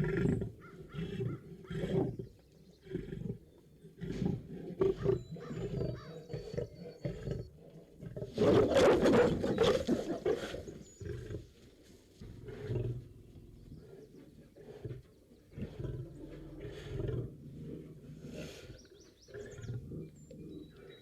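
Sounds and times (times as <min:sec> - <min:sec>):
lion roaring and grunting: 0:12.2 - 0:21.0.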